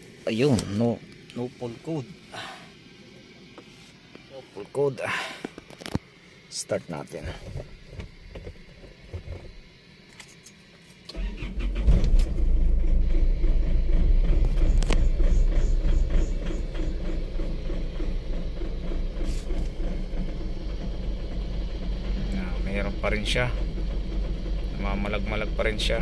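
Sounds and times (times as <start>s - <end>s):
diesel engine starting and idling: 11.1s - 26.0s.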